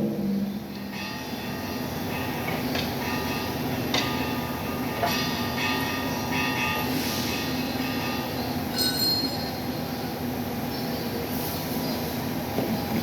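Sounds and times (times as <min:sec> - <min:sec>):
machinery drone: 0:00.0 - 0:01.1.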